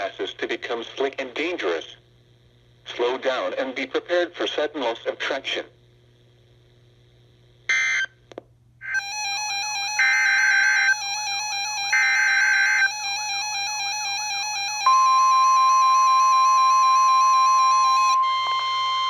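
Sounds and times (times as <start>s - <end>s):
steady electronic tone pattern: 8.8s - 19.0s
weather alert alarm tone: 8.8s - 19.0s.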